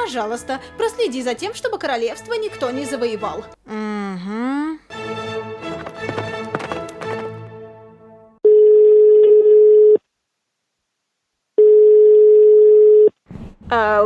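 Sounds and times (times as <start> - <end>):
music: 0.0 - 3.6, 4.9 - 8.4
telephone ringback tone: 8.4 - 10.0.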